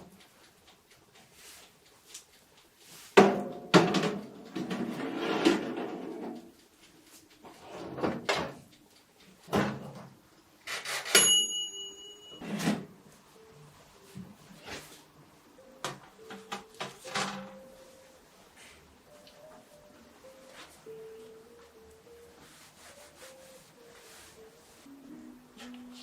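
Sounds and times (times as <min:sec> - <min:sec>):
household objects knocking and clunking: 0:03.2 - 0:05.9.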